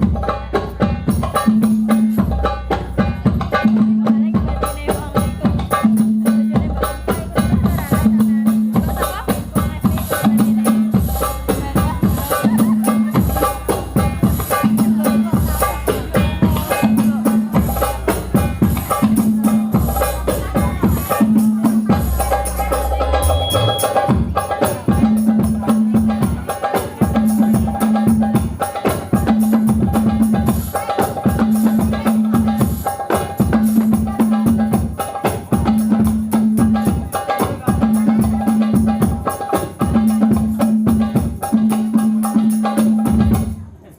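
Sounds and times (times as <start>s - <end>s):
loud music with busy percussion: 0.0s - 43.9s
repeating bass figure: 7.5s - 26.1s.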